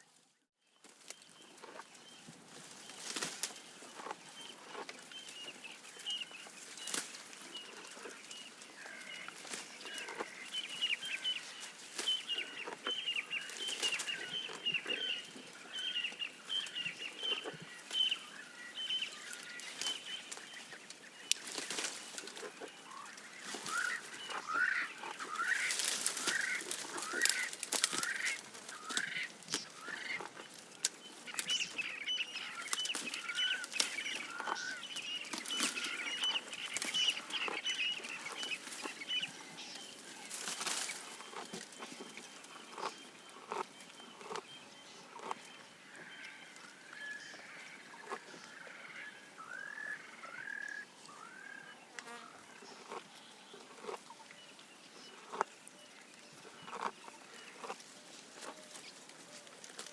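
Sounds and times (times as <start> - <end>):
birds chirping: 0.7 - 59.9
leaves and twigs snapping: 2.7 - 4.1, 6.6 - 14.6, 19.1 - 44.4, 57.6 - 59.9.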